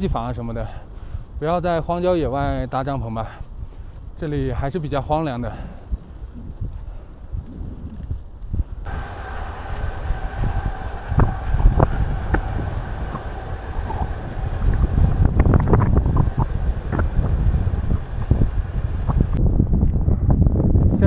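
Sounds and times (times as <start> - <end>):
rattles and clicks: 0.0 - 19.4
steady high whine: 0.0 - 19.5
wind buffeting microphone: 0.0 - 21.0.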